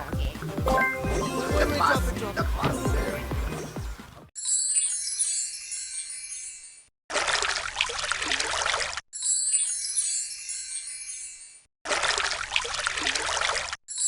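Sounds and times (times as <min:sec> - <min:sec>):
shimmering chime sparkle: 0:04.4 - 0:06.9, 0:09.3 - 0:11.7.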